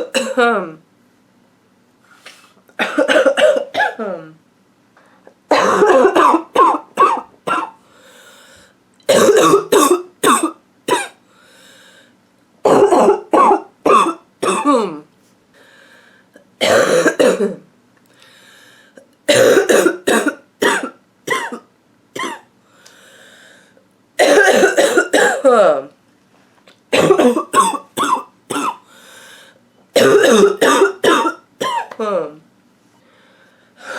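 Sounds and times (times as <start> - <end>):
woman coughing: 0.0 - 0.8, 2.8 - 4.4, 5.5 - 7.8, 9.1 - 11.2, 12.6 - 15.0, 16.6 - 17.6, 19.3 - 22.5, 24.2 - 25.8, 26.9 - 28.8, 30.0 - 32.4
drawn-in breath: 7.8 - 8.8, 11.3 - 12.2, 15.6 - 16.4, 18.1 - 19.0, 22.7 - 23.8, 28.8 - 29.6, 33.0 - 33.9.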